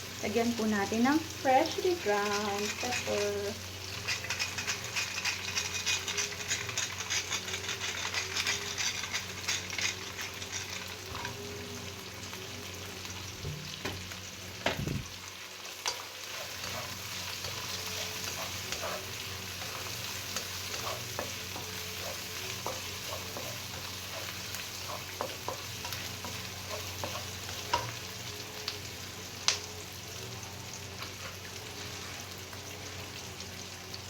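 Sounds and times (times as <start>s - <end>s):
pork sizzling in a pan: 0.0s - 34.0s.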